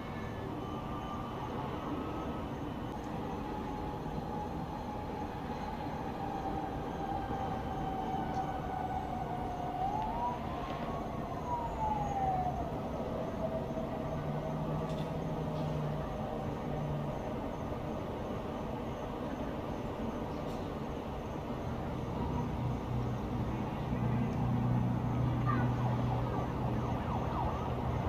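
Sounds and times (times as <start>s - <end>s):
distant siren wailing: 0.0s - 20.1s, 21.4s - 28.0s
low rumble of town traffic: 0.0s - 28.0s.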